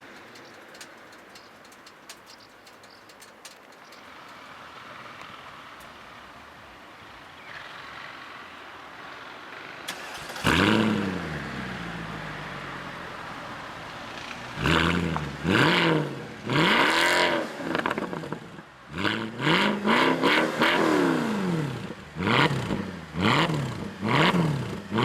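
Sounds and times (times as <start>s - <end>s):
small clicks: 0.0s - 4.4s
car engine starting and idling: 0.0s - 25.0s.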